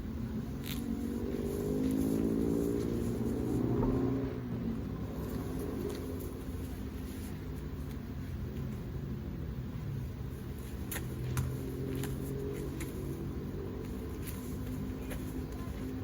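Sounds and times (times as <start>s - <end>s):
engine running: 0.0s - 6.9s.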